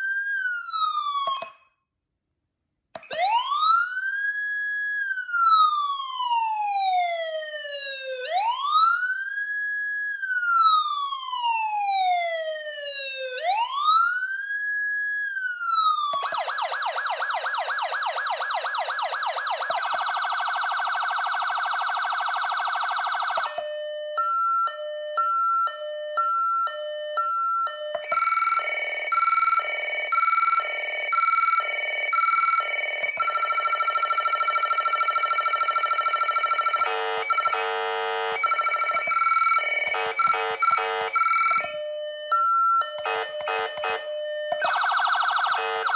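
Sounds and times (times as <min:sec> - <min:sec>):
electronic siren wail: 0:03.0 - 0:45.9
two-tone hi-lo siren: 0:03.0 - 0:45.9
rapid siren yelp: 0:03.1 - 0:09.1, 0:10.3 - 0:45.9
siren warble: 0:15.8 - 0:45.9.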